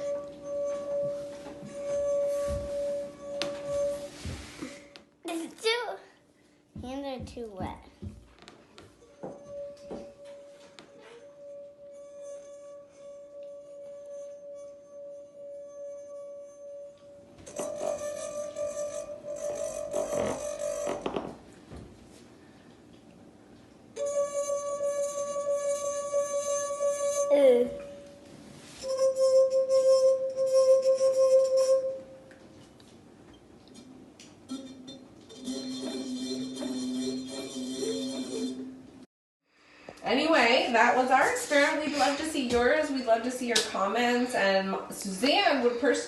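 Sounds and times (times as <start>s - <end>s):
wine glass rim ringing: 0.0s - 4.2s, 9.0s - 21.0s, 24.0s - 28.2s, 28.8s - 32.2s, 34.5s - 38.8s.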